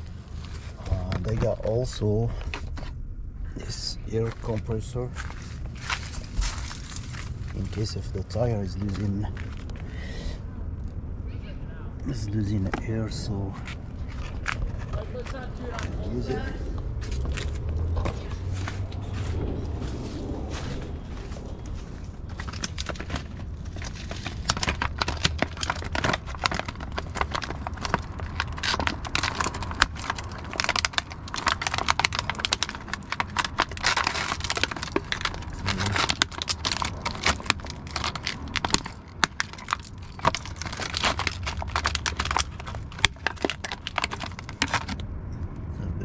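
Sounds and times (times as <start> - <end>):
plastic packaging crinkling: 0.0 - 2.9, 3.7 - 9.9, 12.2 - 45.0.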